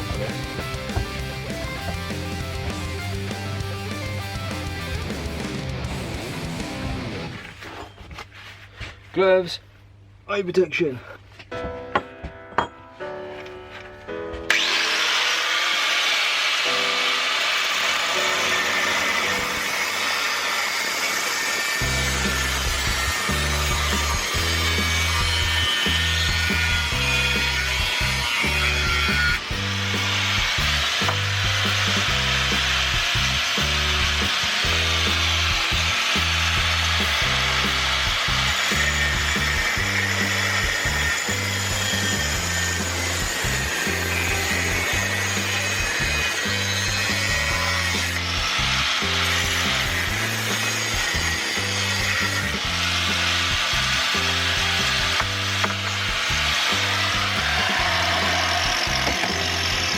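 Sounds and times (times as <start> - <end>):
background music with bass line: 0.0 - 7.4, 21.8 - 59.9
power tool rasping on steel: 14.5 - 59.9.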